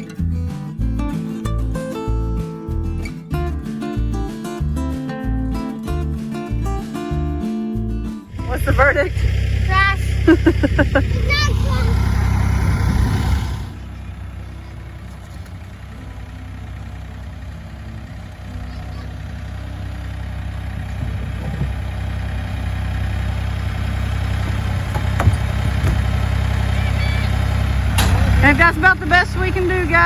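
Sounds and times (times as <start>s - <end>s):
tractor engine idling: 8.3s - 30.0s
rush of noise: 9.9s - 14.1s.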